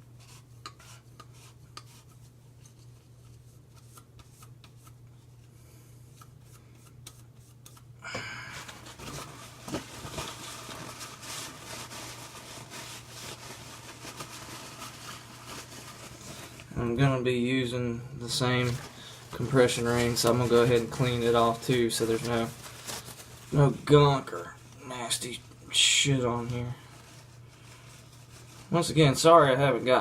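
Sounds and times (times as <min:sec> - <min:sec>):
rubbing strokes rustling: 0:08.7 - 0:16.7, 0:26.8 - 0:29.0.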